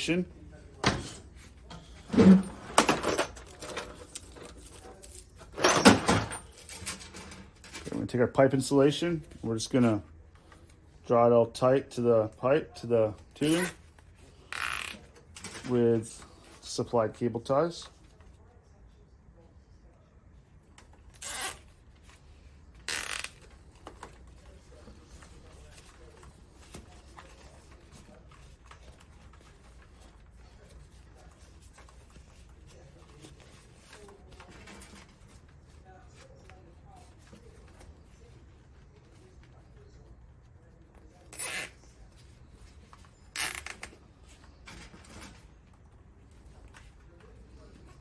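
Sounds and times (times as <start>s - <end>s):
cable ties zipping tight: 21.2s - 21.6s, 22.9s - 23.4s, 41.3s - 41.8s.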